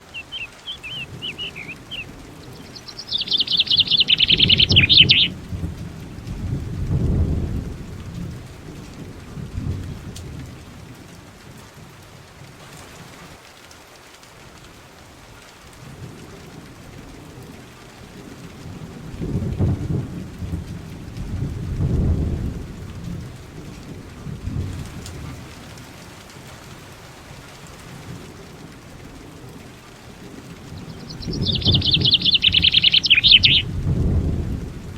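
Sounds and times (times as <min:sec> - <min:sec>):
steady rain: 0:00.0 - 0:34.9
bird chirping trill: 0:00.1 - 0:05.3, 0:30.8 - 0:33.7
low rolling thunder: 0:00.3 - 0:11.9, 0:15.8 - 0:34.9.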